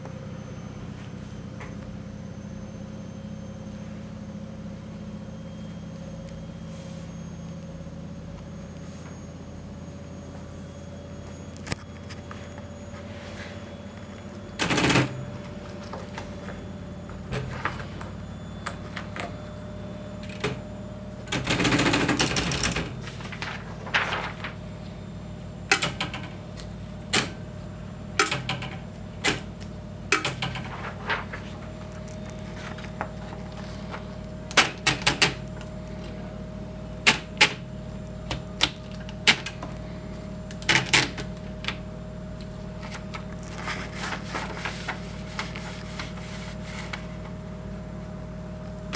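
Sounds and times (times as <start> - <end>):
steady hum: 0.0 - 48.9
typewriter rasping: 14.5 - 15.9, 20.2 - 24.8, 25.7 - 27.4, 28.2 - 36.2, 37.0 - 41.8, 42.4 - 47.3.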